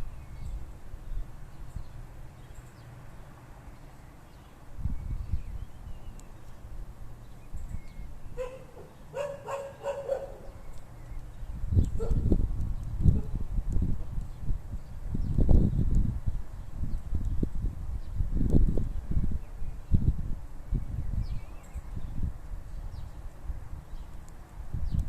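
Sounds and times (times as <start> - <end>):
dog barking: 8.4 - 10.6.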